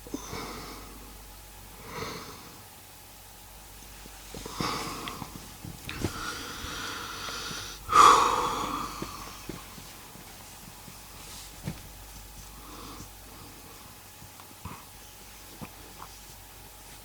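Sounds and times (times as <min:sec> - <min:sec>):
man snoring: 0:06.2 - 0:09.3.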